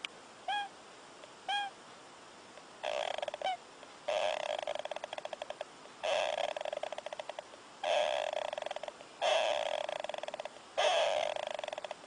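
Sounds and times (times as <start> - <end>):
pet snoring: 2.8 - 12.0.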